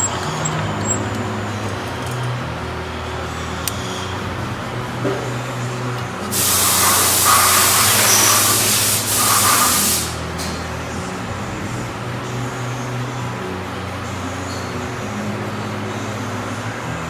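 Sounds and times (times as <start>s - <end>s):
machine humming: 0.0s - 12.8s
compressed air hissing: 6.0s - 10.4s.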